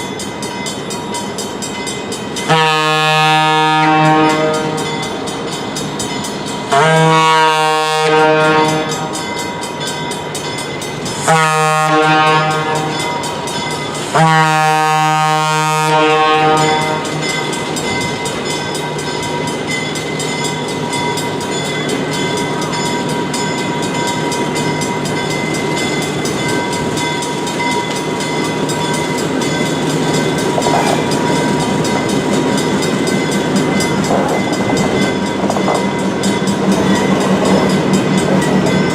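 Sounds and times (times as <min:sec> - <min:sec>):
train running: 0:00.0 - 0:38.9
locomotive horn blasts: 0:02.5 - 0:05.0, 0:06.7 - 0:09.2, 0:11.2 - 0:13.2, 0:14.1 - 0:17.3.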